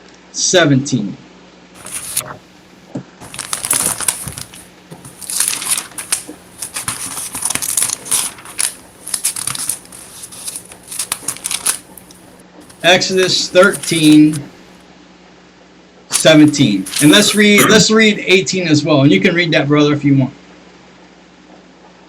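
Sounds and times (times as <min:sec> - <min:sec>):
thin pages rustling: 0:01.8 - 0:02.5, 0:03.2 - 0:14.8, 0:16.1 - 0:18.2.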